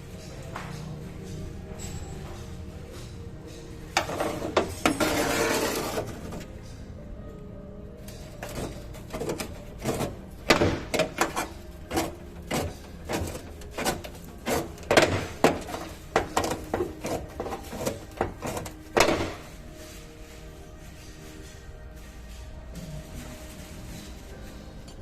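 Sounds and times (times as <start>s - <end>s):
hammer knocking on sheet metal: 9.2s - 19.5s.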